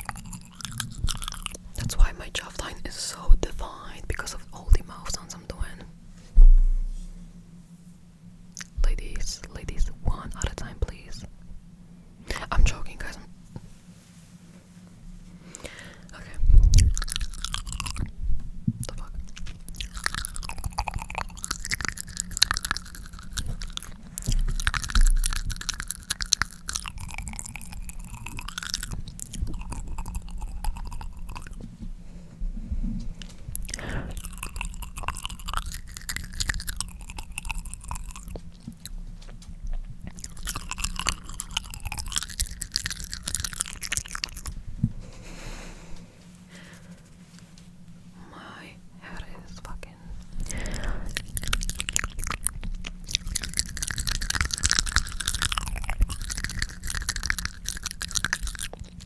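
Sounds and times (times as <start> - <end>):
wet tongue clicks and smacks: 0.0 - 5.3, 8.6 - 11.1, 15.5 - 31.7, 33.2 - 44.6, 49.6 - 59.0
low bumps: 6.2 - 7.4.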